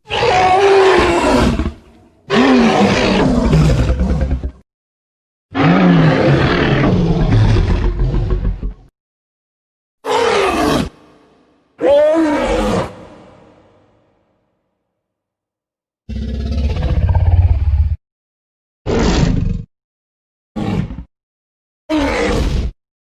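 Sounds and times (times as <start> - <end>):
dinosaur roar: 0.0 - 4.6, 5.6 - 8.9, 10.1 - 11.0, 11.8 - 13.8, 16.1 - 18.0.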